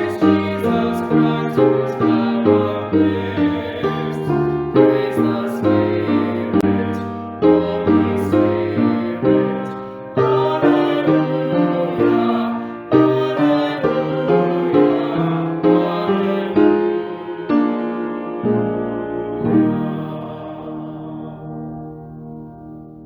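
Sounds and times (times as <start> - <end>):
slow solo piano piece: 0.0 - 23.0.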